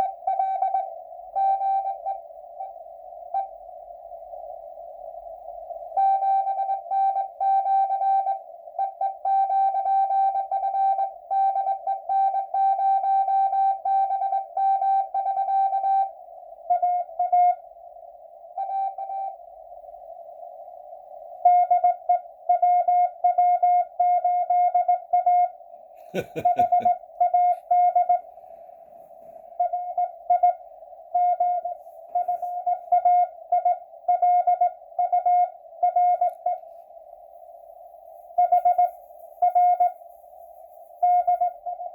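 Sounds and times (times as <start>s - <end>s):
morse code tone keyed on and off: 26.2s - 28.3s, 29.6s - 36.6s, 38.4s - 40.0s, 41.0s - 41.9s.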